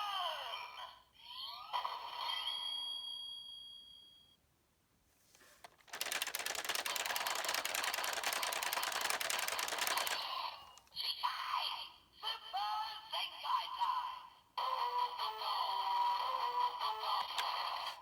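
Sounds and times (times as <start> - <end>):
toy clicking and whirring: 5.6 - 10.4.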